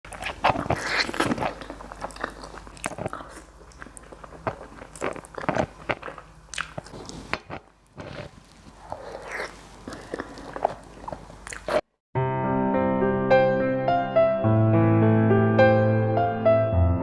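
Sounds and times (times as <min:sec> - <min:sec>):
person chewing with wet crunches: 0:00.1 - 0:11.9.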